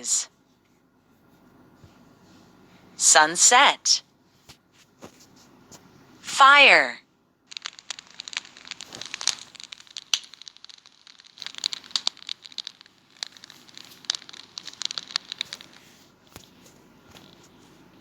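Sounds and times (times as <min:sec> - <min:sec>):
fire crackling: 0:07.5 - 0:16.0.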